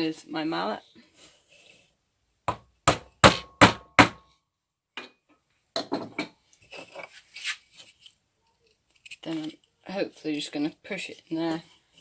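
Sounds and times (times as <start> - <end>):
mallet tapping wooden dowel: 2.5 - 4.2.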